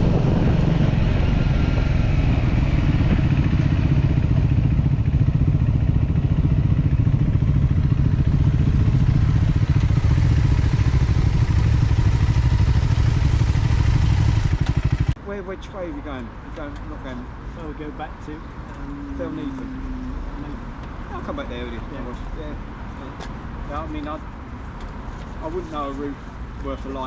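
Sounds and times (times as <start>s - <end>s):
motorcycle engine running: 0.0s - 15.2s.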